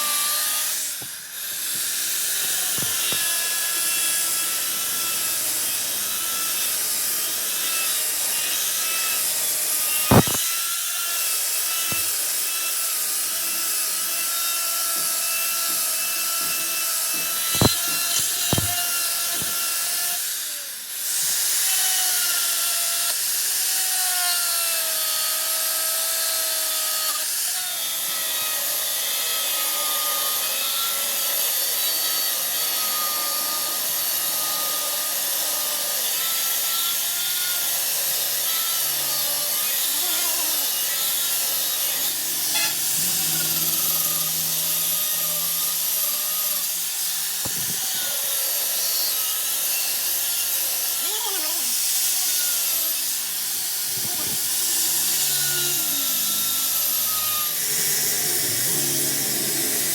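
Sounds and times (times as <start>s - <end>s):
machine tool cutting steel: 0.0s - 20.5s, 29.9s - 59.9s
sharp knocks: 10.1s - 10.4s, 17.2s - 18.8s.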